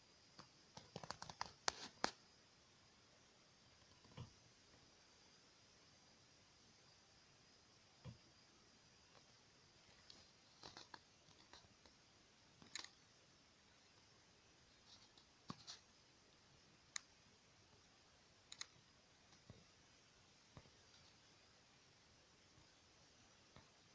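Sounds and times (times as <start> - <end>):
faint small clicks and taps: 0.3 - 2.2, 9.1 - 12.0, 12.6 - 13.0, 14.8 - 15.8, 16.9 - 17.1, 18.5 - 19.7, 23.5 - 23.8.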